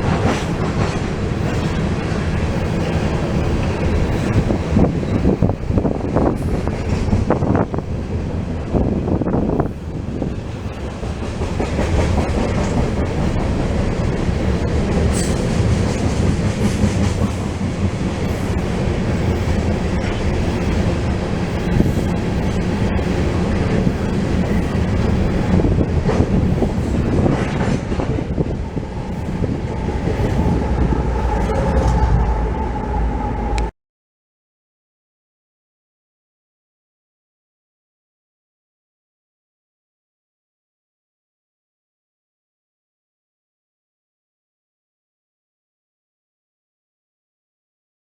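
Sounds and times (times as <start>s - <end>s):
freight train rumbling past: 0.0s - 33.7s
wheels clacking over rail joints: 0.0s - 33.7s.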